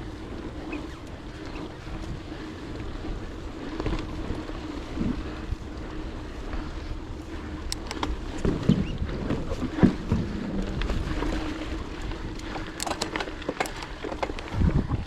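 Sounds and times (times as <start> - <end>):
mountain bike rolling on dirt: 0.0 - 15.0
wind rushing over microphone: 0.0 - 15.0
bike knocks and rattles: 7.7 - 15.0.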